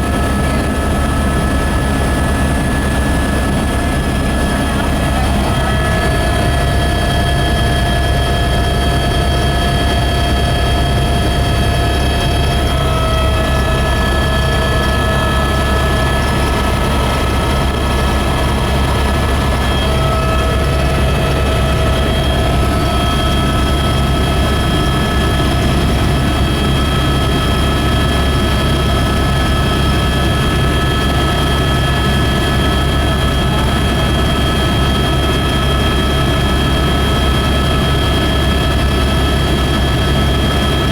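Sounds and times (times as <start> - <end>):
helicopter engine and rotor drone: 0.0 - 40.9
high steady whines: 0.0 - 40.9.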